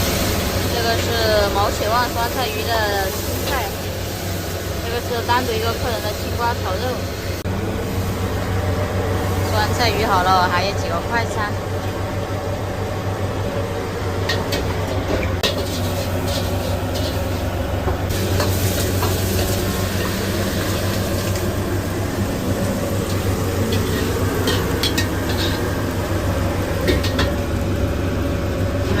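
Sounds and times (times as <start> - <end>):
food sizzling in a wok: 0.0 - 10.7, 13.8 - 29.0
extractor fan humming: 0.0 - 29.0
metal spatula scraping a wok: 15.4 - 17.4, 23.6 - 25.7.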